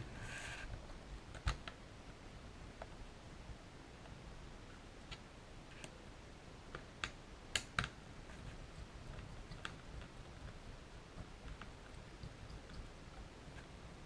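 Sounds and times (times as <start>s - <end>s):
clicks and taps of tools: 6.7s - 8.0s.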